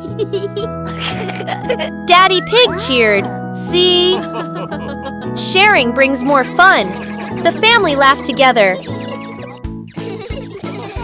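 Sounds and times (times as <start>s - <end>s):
bouncy tune with steady beat: 3.9s - 11.0s.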